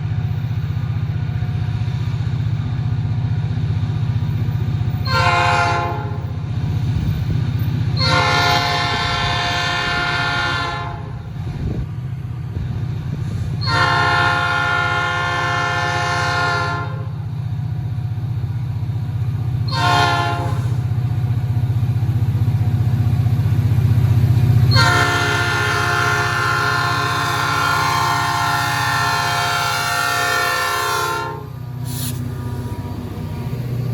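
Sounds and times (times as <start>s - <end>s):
diesel locomotive engine drone: 0.0s - 33.9s
train chord horn blasts: 5.0s - 6.4s, 8.0s - 11.3s, 13.6s - 17.2s, 19.7s - 20.9s, 24.7s - 33.9s.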